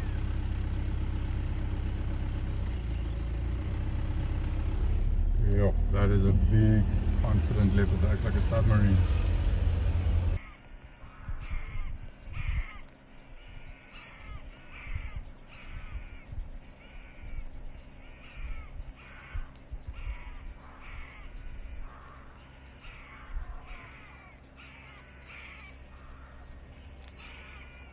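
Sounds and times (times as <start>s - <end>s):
low uneven rumble: 0.0s - 10.4s
birds harsh calls: 0.0s - 27.9s.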